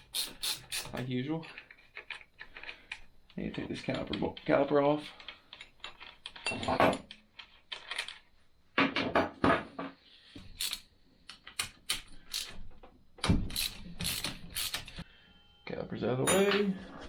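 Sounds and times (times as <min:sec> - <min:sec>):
metal tools and bolts clinking: 0:00.1 - 0:08.3, 0:16.1 - 0:17.0.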